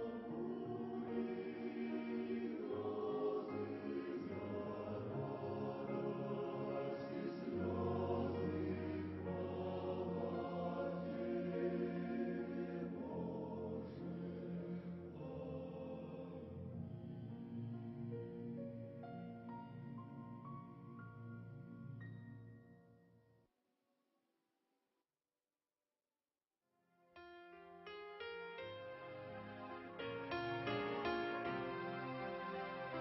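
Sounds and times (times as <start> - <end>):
choir singing a hymn: 0.0 - 18.0, 29.2 - 33.0.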